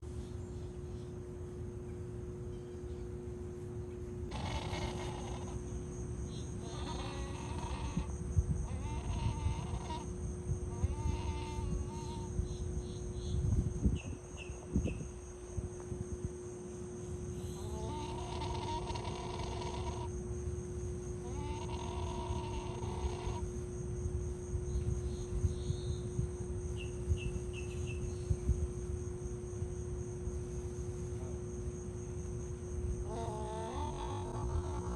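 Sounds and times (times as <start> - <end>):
insect drone: 0.0 - 34.9
heron raspy calls: 4.3 - 5.8, 6.4 - 12.3, 17.4 - 20.1, 21.2 - 23.4, 33.0 - 34.9.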